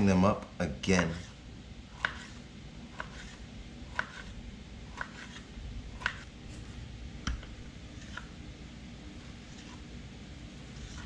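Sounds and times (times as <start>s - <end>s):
knife chopping on cutting board: 0.9s - 6.3s, 7.2s - 8.3s.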